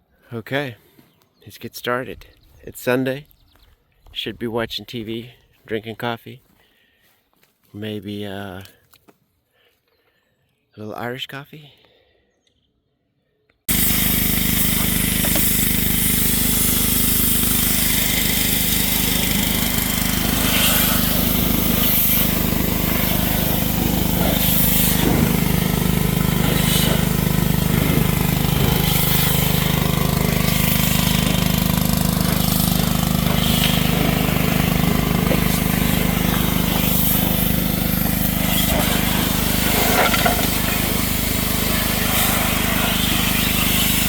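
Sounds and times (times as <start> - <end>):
pressure washer motor drone: 13.7 - 44.0
water jet hissing: 13.7 - 44.0.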